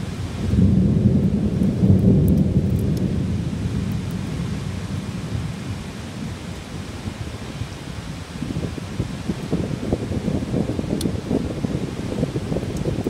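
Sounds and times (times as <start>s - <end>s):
thunder rumble: 0.0s - 7.7s, 8.4s - 13.0s
heavy rain: 0.0s - 13.0s.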